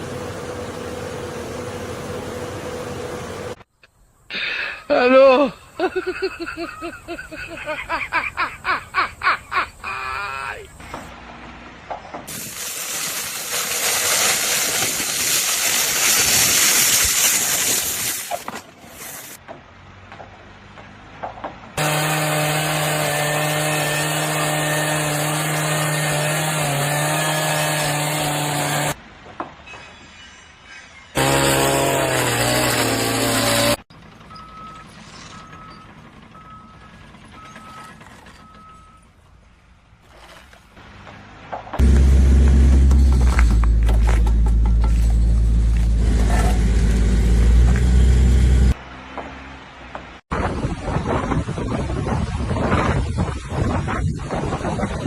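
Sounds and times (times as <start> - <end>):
loud rushing hiss: 12.3 - 19.4
low engine rumble: 33.9 - 40.0, 40.8 - 48.8
reversing alarm beeping: 34.2 - 39.2.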